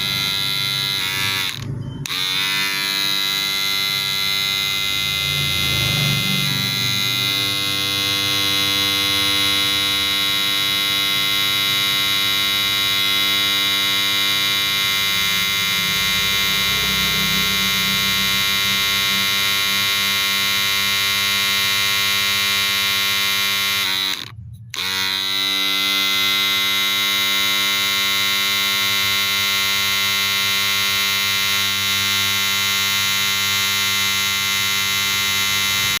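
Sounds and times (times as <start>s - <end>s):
hair clipper humming: 0.0s - 36.0s.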